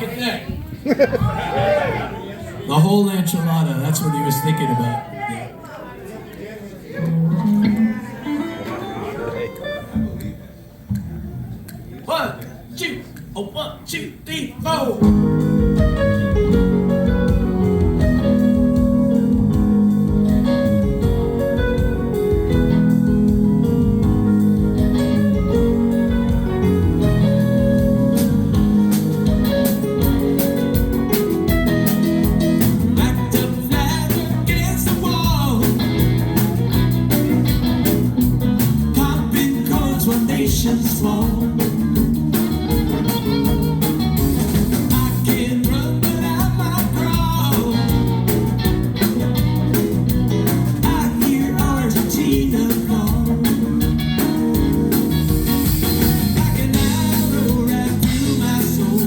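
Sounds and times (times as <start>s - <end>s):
live band playing: 7.0s - 11.9s, 15.0s - 59.0s.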